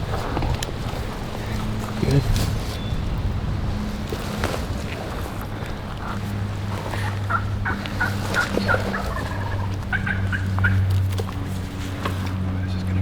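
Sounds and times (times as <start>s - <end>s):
steady low hum: 0.0s - 13.0s
wind noise: 0.0s - 13.0s
turkey gobbling: 6.0s - 11.0s.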